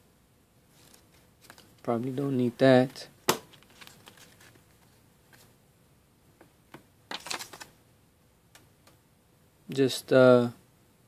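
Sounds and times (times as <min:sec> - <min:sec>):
paper rustling: 0:03.5 - 0:05.5, 0:07.1 - 0:07.8.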